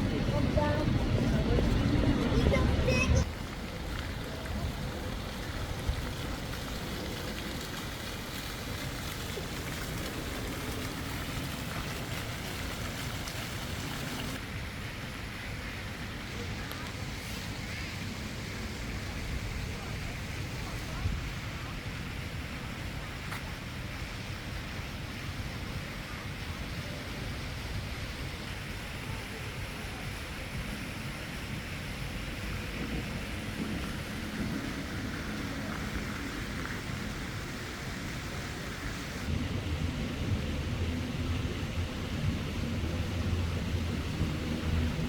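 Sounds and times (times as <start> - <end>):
low fluttering rumble: 0.0 - 14.4, 29.7 - 45.0
wind on microphone: 0.0 - 14.4, 17.0 - 45.0
city street traffic: 0.0 - 23.8, 28.2 - 45.0.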